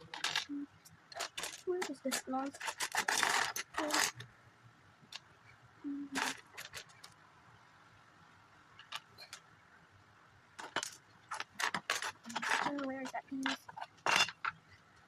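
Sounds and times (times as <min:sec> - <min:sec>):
plastic bricks clicking and clattering: 0:00.0 - 0:04.2, 0:06.1 - 0:07.2, 0:10.6 - 0:14.6.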